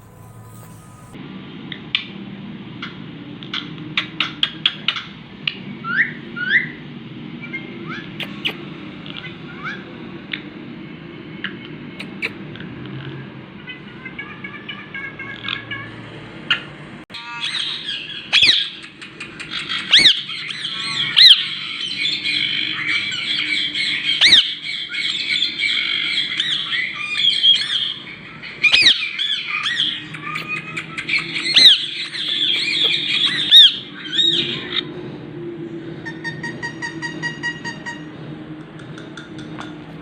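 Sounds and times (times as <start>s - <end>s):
parrot chattering calls: 12.0s - 12.4s, 17.4s - 34.8s
parrot squawking and screeching: 12.0s - 12.4s, 17.4s - 18.8s, 19.7s - 34.8s.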